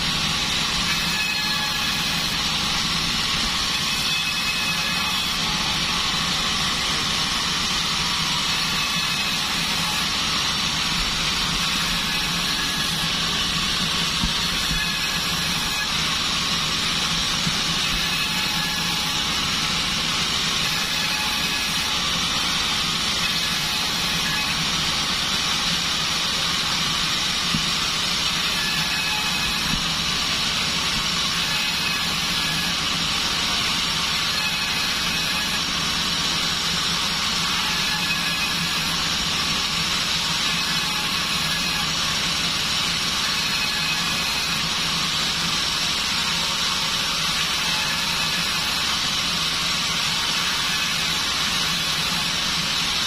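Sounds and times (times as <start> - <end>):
band sawmill running: 0.0 - 53.0.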